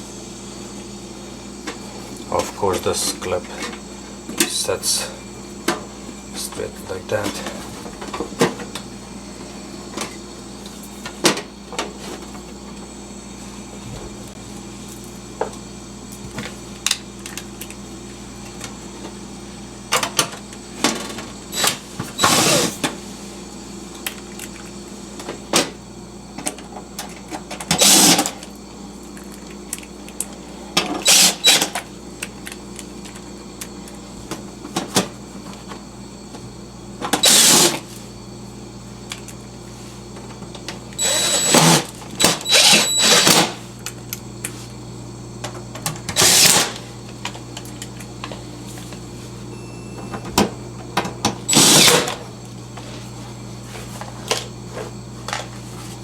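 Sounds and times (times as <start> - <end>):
refrigerator humming: 0.0 - 56.0
cordless driver bursts: 21.6 - 22.7, 27.7 - 28.2, 31.0 - 31.6, 37.2 - 37.8, 41.0 - 43.5, 46.2 - 46.7, 51.5 - 52.1.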